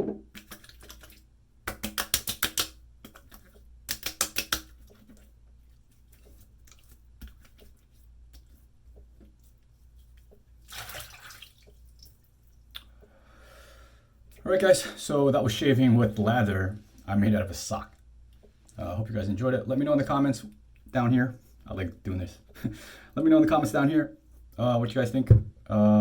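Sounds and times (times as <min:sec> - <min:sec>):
hands slapping face: 0:01.7 - 0:05.0
soft rubbing of skin: 0:03.0 - 0:10.7.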